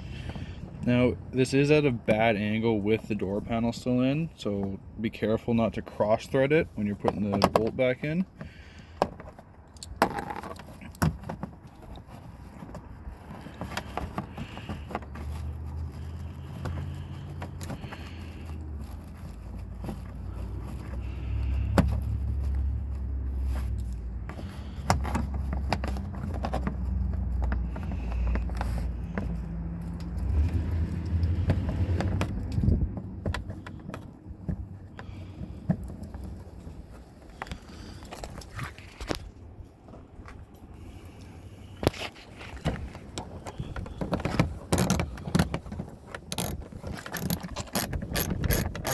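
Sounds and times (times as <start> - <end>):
small metallic clicks and rattles: 43.1 - 48.9.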